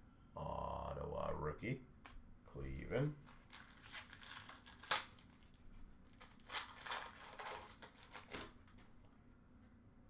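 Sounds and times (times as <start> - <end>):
foil wrapper tearing and crinkling: 3.2 - 8.7
cards rustling: 3.2 - 8.9.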